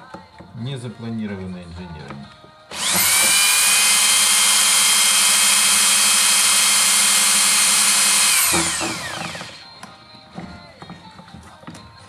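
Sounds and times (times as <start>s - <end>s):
electric drill whining: 2.7s - 9.8s.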